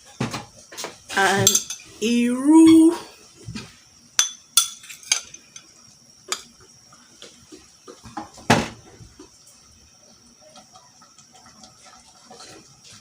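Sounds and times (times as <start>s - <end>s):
utensils clinking against dishes: 1.1s - 2.9s, 4.2s - 5.7s.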